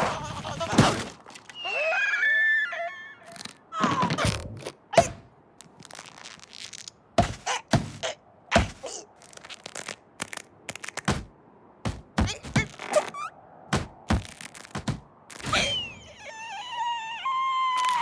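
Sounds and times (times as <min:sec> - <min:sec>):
cartoon knocks and thuds: 0:07.2 - 0:08.8, 0:11.0 - 0:12.8, 0:13.7 - 0:15.6.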